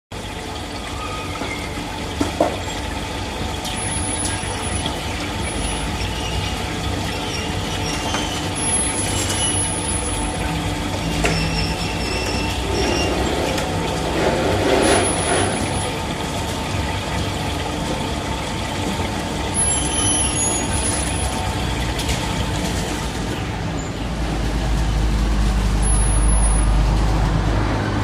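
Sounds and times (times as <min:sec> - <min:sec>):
machine humming and hissing: 0:00.2 - 0:28.0.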